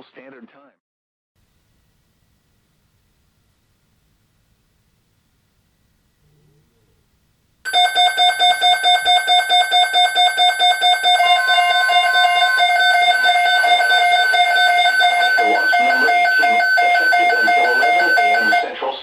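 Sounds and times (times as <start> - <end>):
steady alarm tone: 7.7 - 18.8
weather radio alarm beeping: 7.7 - 18.9.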